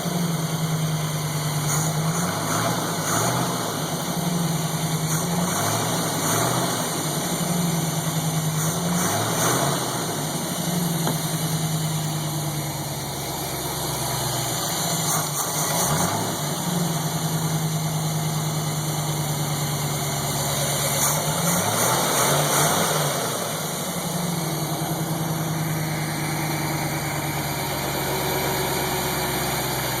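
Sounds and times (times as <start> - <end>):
car engine idling and revving: 0.0 - 30.0
engine ticking knock: 4.7 - 15.9.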